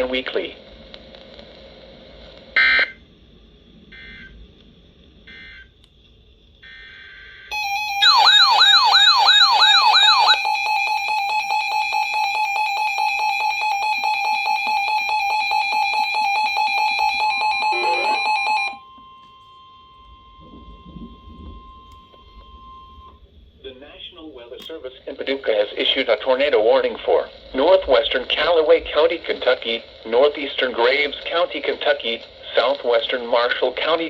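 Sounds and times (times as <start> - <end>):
warbling electronic alarm: 3.9 - 4.4, 5.2 - 5.8, 6.6 - 23.3
digital data bursts: 7.5 - 10.4, 17.6 - 18.4
attention tone: 17.4 - 18.8.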